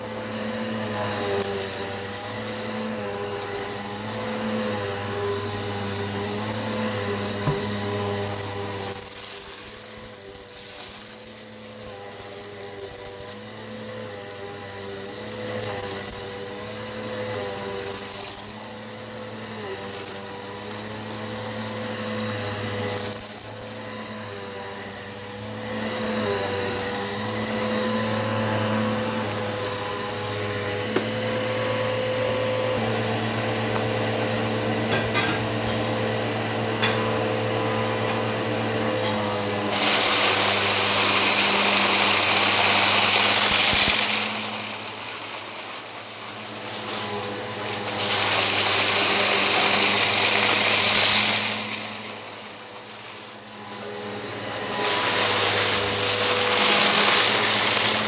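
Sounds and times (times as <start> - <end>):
vacuum cleaner motor whining: 0.0 - 58.0
loud rushing hiss: 39.7 - 58.0.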